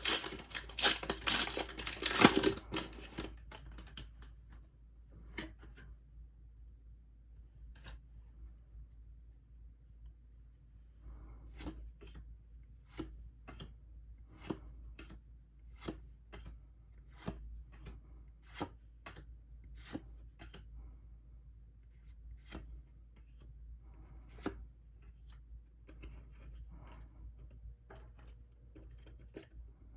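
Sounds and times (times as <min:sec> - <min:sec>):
trading cards tapping and snapping: 0:00.0 - 0:03.9.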